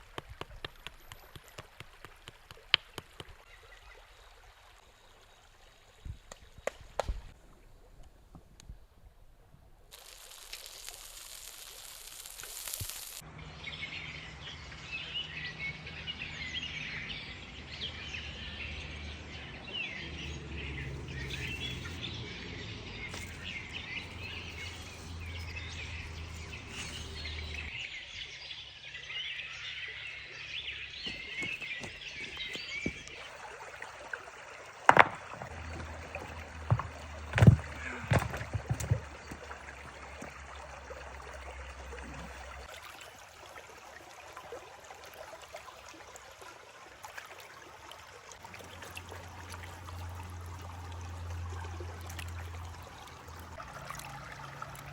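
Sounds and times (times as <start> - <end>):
small birds chirping: 13.5 - 33.4
sharp knocks: 34.9 - 39.5.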